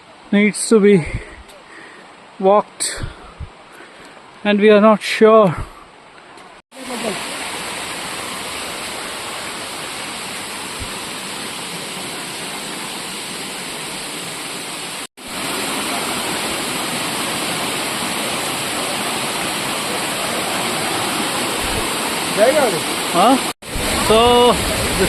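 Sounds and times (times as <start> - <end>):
waterfall rushing: 6.7 - 25.0.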